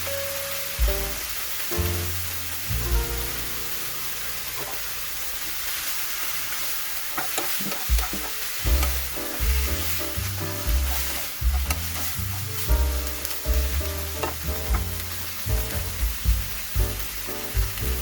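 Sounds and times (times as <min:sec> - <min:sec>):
food sizzling in a frying pan: 0:00.0 - 0:18.0
utensil clicking against pan: 0:07.2 - 0:16.1.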